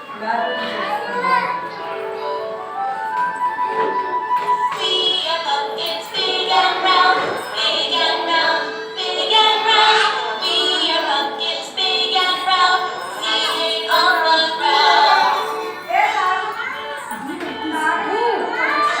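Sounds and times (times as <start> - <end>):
backing music: 0.0 - 19.0
person singing: 4.6 - 16.6.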